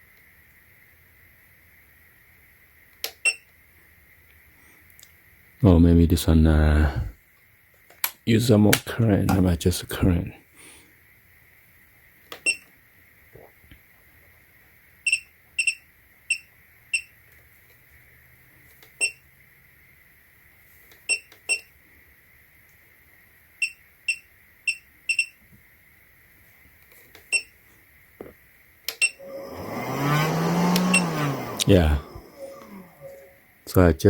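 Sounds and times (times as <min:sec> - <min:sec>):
faint high-pitched tone: 0:30.9 - 0:33.8.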